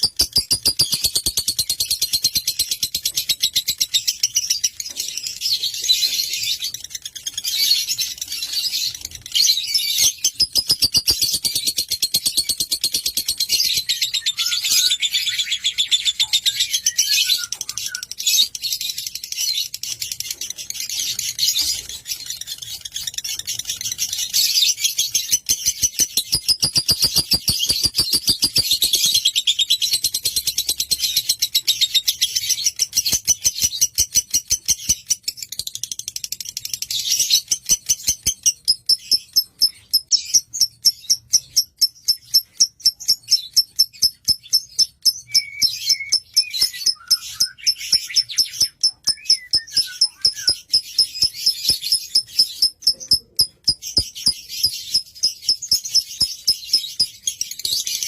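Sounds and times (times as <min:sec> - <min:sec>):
lovebird chattering song: 0:00.0 - 0:58.0.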